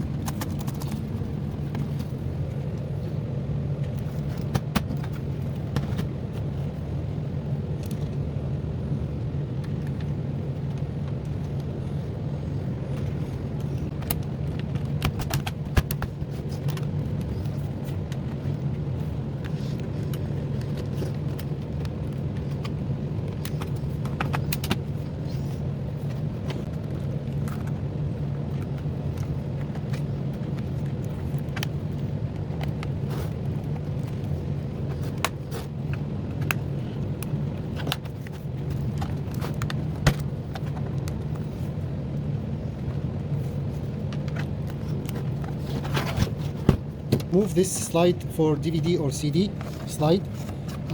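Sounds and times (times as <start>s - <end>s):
steady low hum: 0.0s - 50.9s
clicks of laptop parts handled: 13.0s - 18.7s, 19.4s - 25.5s.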